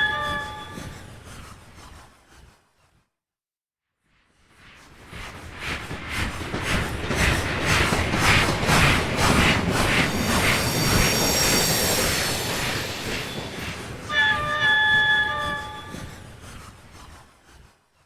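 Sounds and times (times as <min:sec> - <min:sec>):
high squealing ring: 0:00.0 - 0:01.1, 0:10.0 - 0:16.4
steam locomotive chuffing: 0:05.4 - 0:17.4.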